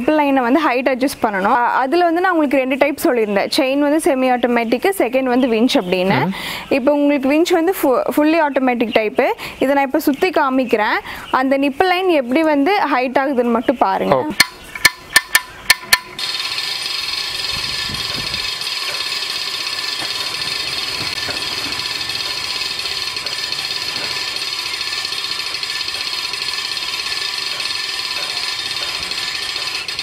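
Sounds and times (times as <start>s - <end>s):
winch humming: 14.1s - 30.0s
winch clicking: 14.4s - 30.0s.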